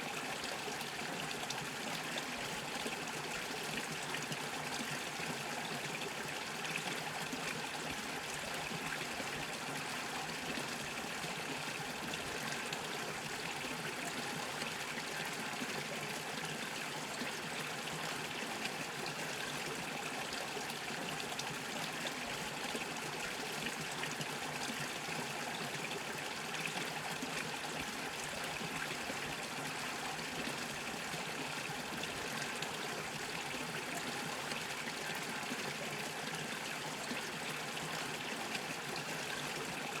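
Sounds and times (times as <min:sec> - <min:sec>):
brook bubbling over stones: 0:00.0 - 0:40.0.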